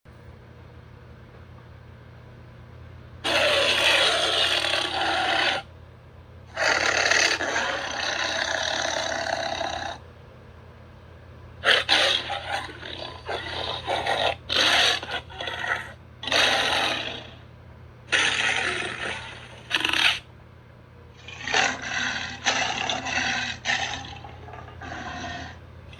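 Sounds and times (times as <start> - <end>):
faint steady hum: 0.1 - 25.9
rough growl-like noises: 3.2 - 5.7, 6.5 - 10.0, 11.6 - 17.4, 18.1 - 20.2, 21.2 - 25.6.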